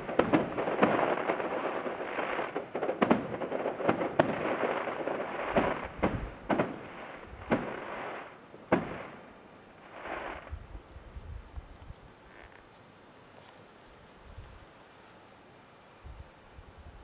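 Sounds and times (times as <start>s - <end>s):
distant firework bursts: 0.0s - 10.6s
fireworks crackling hiss: 0.0s - 12.6s.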